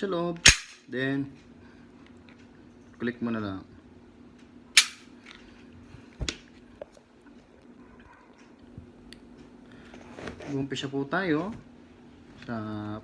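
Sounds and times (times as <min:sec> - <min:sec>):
pistol trigger click: 0:00.5 - 0:00.8, 0:04.8 - 0:05.0.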